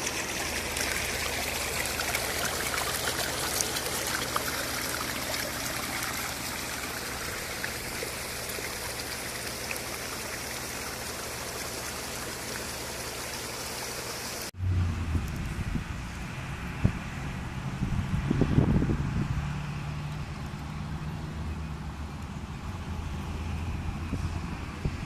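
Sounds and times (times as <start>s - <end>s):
flowing water rushing: 0.0s - 14.6s
wind rumble on microphone: 14.6s - 21.2s, 22.5s - 25.0s.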